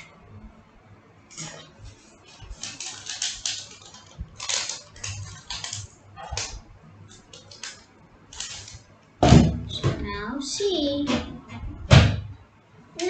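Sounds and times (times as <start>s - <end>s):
newspaper rustling: 1.3s - 8.9s.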